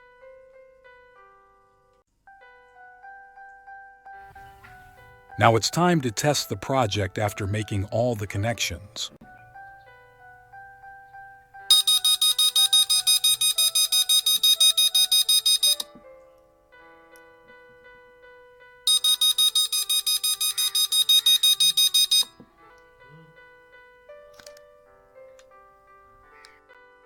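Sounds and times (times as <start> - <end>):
soft background music: 0.0 - 27.0
alarm beeper pulsing: 11.7 - 15.9, 18.9 - 22.4.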